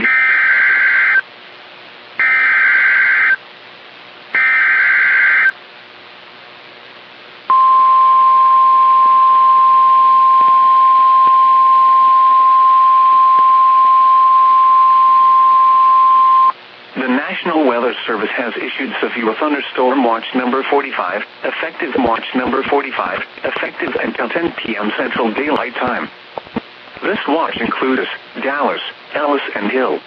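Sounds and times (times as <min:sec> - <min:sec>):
steady high alarm tone: 0:02.2 - 0:03.4, 0:04.4 - 0:05.6, 0:07.5 - 0:16.5.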